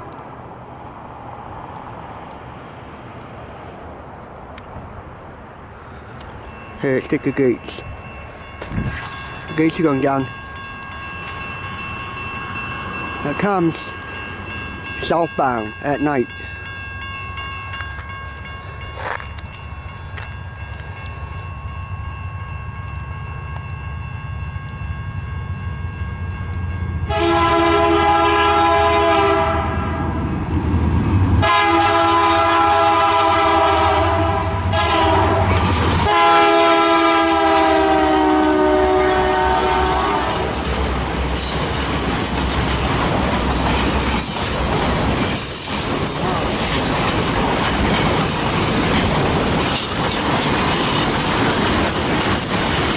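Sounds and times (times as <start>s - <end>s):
diesel locomotive engine drone: 0.0s - 52.9s
train horn blasts: 27.0s - 30.1s, 31.4s - 40.6s
train wheels clattering on rails: 34.8s - 36.2s, 39.7s - 52.9s.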